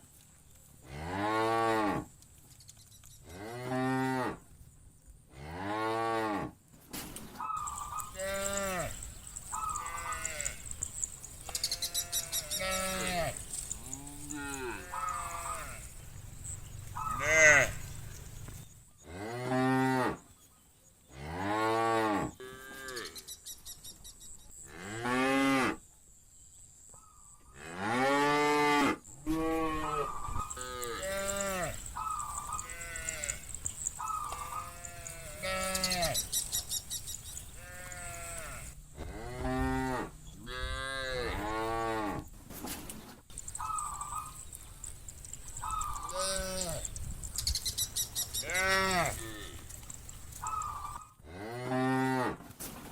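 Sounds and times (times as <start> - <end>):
cows mooing: 7.7 - 18.3, 27.6 - 36.4, 37.6 - 42.3, 48.4 - 52.4.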